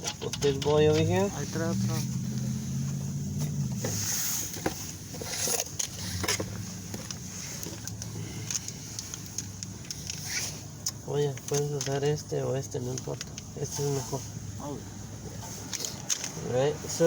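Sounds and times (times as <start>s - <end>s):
hand tools clicking and knocking: 0.0s - 1.3s, 4.6s - 14.0s, 15.2s - 16.5s.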